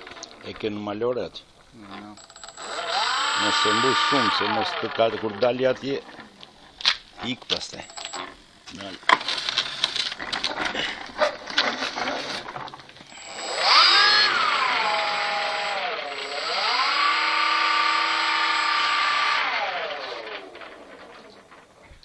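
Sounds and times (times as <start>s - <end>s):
model plane motor whining: 2.2s - 7.0s, 11.5s - 21.7s.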